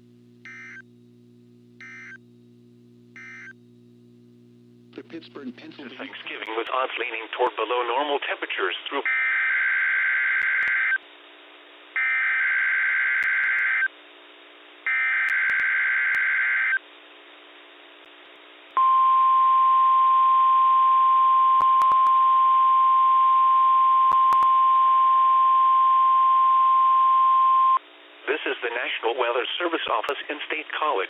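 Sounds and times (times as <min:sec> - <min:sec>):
steady warning alarm tone: 0:00.5 - 0:00.8, 0:01.8 - 0:02.2, 0:03.2 - 0:03.6
radio hiss: 0:04.9 - 0:09.1, 0:28.2 - 0:31.0.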